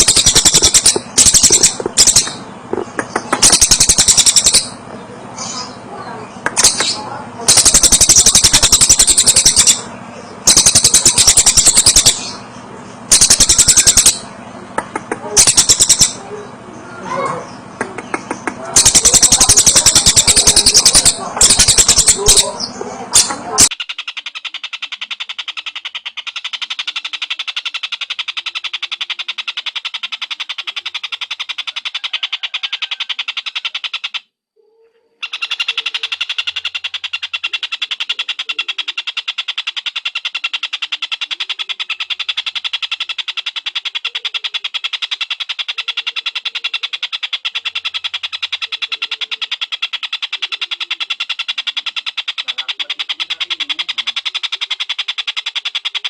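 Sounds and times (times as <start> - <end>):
kingfisher high fast trill: 0.0 - 2.5, 3.2 - 4.8, 6.5 - 14.3, 15.2 - 16.3, 18.6 - 23.8.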